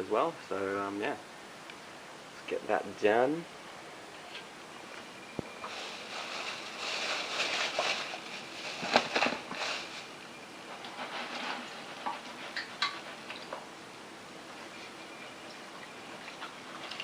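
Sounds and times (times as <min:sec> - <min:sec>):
gravel rattling in a sieve: 0:05.7 - 0:10.2.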